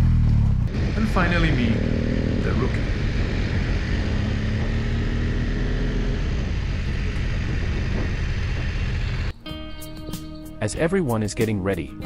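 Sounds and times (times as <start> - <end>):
motorcycle engine running: 0.0 - 9.3.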